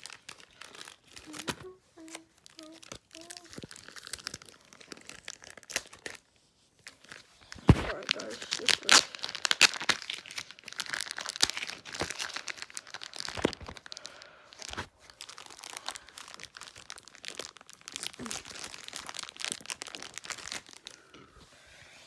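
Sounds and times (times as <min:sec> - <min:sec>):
packaging crinkling and tearing: 0:00.0 - 0:21.3.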